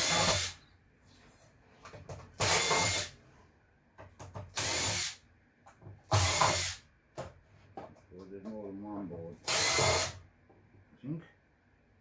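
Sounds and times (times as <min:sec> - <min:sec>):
cordless drill spinning: 0:00.0 - 0:00.6, 0:02.4 - 0:03.1, 0:04.6 - 0:05.2, 0:06.2 - 0:06.8, 0:09.4 - 0:10.2.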